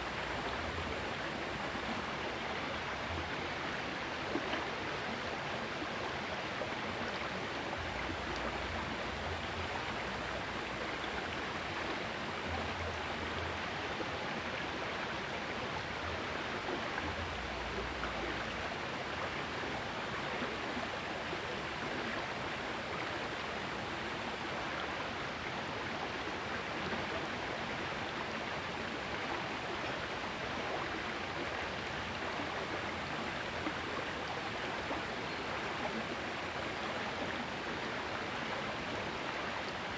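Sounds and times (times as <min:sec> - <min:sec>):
river water flowing: 0:00.0 - 0:39.9.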